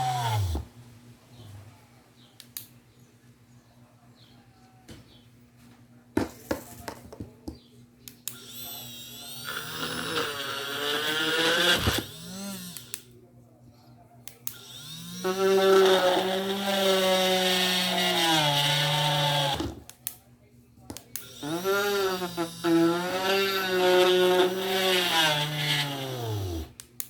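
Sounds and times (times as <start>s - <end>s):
drill motor whining: 0.0s - 0.7s, 8.3s - 13.0s, 14.5s - 19.8s, 21.2s - 26.7s.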